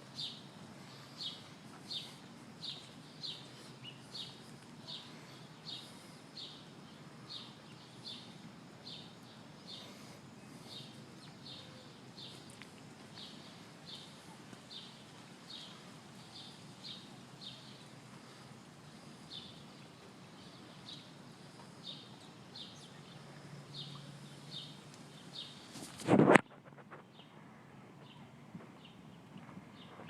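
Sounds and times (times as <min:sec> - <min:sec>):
faint low background noise: 0:00.0 - 0:30.0
bird chirping: 0:00.1 - 0:12.6.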